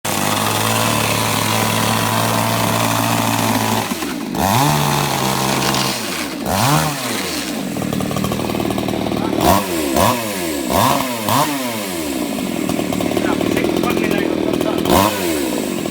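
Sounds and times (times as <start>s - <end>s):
chainsaw engine running and revving: 0.0s - 15.9s.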